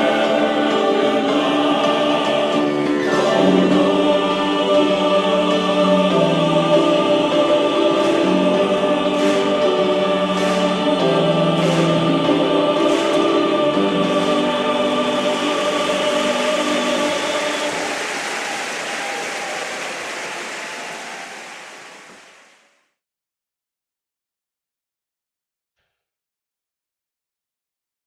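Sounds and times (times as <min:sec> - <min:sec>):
choir singing held chords: 0:00.0 - 0:22.6.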